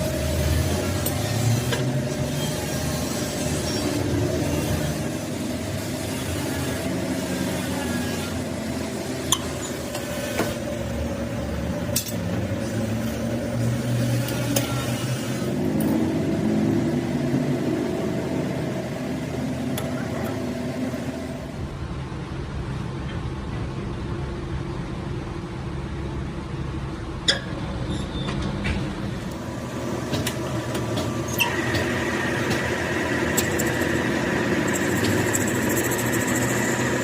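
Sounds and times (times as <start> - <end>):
machine humming: 29.2 - 37.0.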